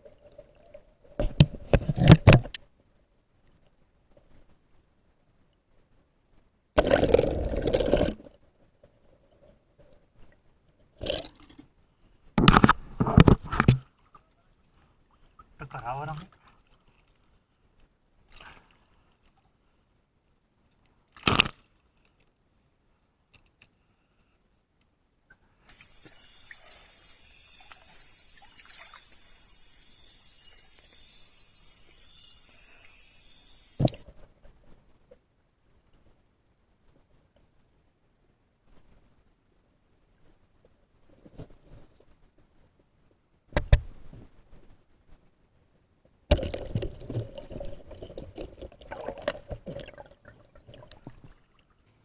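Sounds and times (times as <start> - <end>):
water sloshing and gurgling: 12.5 - 17.6, 46.3 - 52.0
crickets chirping: 19.3 - 20.7, 22.6 - 34.0.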